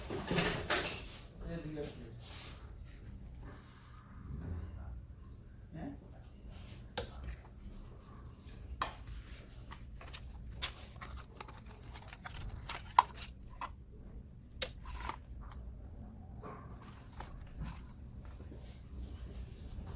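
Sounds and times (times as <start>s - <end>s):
hands handling smartwatch packaging: 8.8s - 13.8s, 14.6s - 15.6s, 16.8s - 18.7s.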